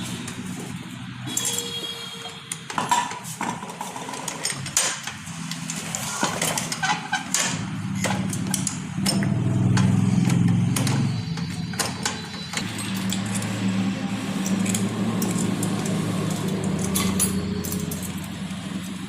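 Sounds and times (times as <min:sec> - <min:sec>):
metal tools clinking: 0:01.3 - 0:01.8, 0:05.6 - 0:19.0
engine running: 0:07.6 - 0:19.0.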